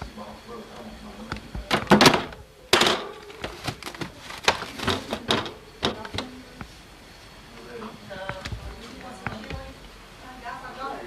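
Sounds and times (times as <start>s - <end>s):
frozen food packages clattering: 1.7s - 6.3s.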